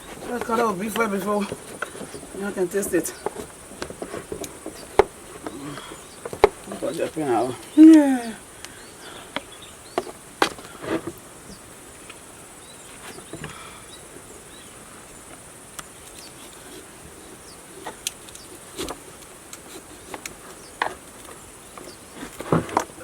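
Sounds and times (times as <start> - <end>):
insects chirring: 0.0 - 23.0
sharp clicks and knocks: 0.1 - 7.8.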